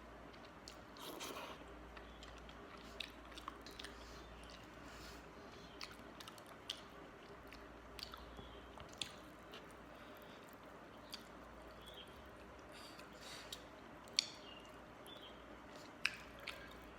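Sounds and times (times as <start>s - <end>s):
wet chewing and squelching: 0.2s - 16.9s
mouth clicks and smacks: 5.6s - 9.8s, 12.4s - 16.9s.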